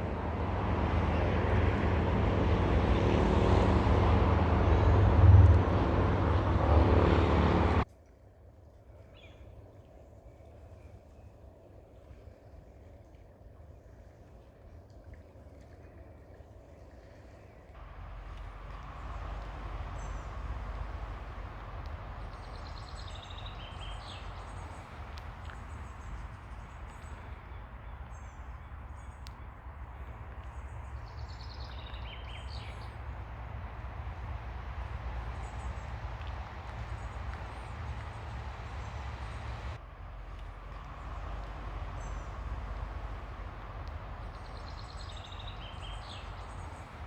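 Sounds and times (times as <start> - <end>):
ocean waves washing on beach: 0.0 - 7.8, 17.8 - 47.0
bird chirping: 22.0 - 29.5.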